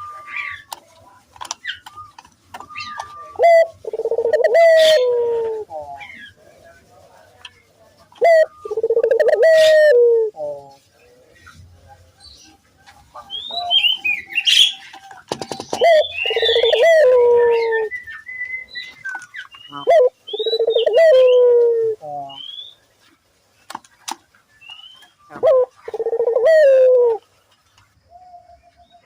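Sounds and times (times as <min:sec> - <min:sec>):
small birds chirping: 0:00.0 - 0:29.0
dove cooing: 0:01.6 - 0:06.4, 0:08.2 - 0:10.8, 0:13.1 - 0:18.1, 0:18.9 - 0:22.4, 0:25.3 - 0:27.3.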